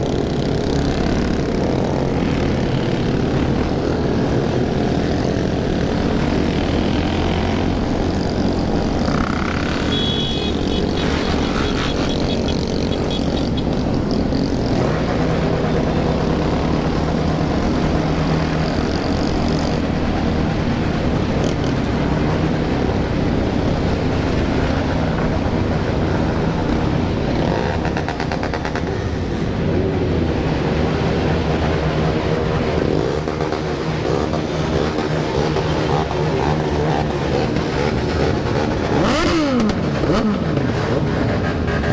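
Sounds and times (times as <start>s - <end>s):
many motorcycle engines running: 0.0s - 41.9s.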